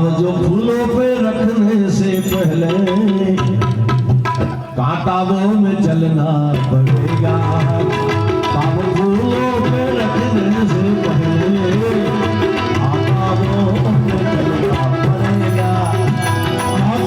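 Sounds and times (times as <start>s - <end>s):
tabla playing: 0.0s - 17.0s
gliding melodic instrument line: 2.0s - 3.8s, 14.7s - 17.0s.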